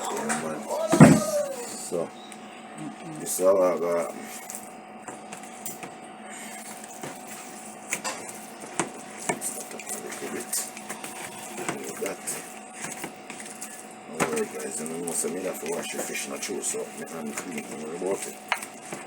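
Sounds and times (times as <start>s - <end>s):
kitchen utensils clinking: 0.0s - 1.4s, 6.6s - 19.0s.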